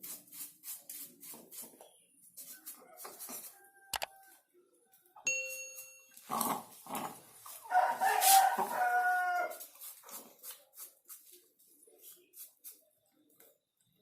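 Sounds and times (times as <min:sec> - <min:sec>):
bell-like ding: 0:05.3 - 0:06.2
rooster crowing: 0:07.7 - 0:09.6.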